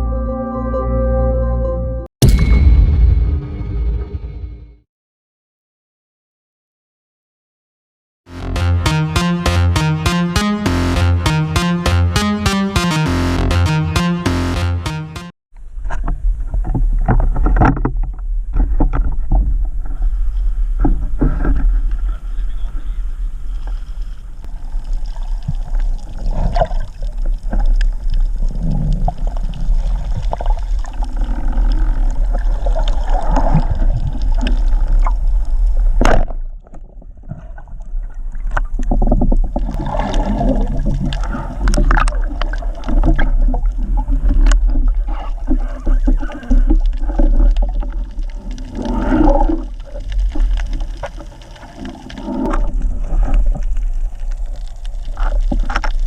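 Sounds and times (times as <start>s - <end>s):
water rushing and bubbling: 24.5s - 56.0s.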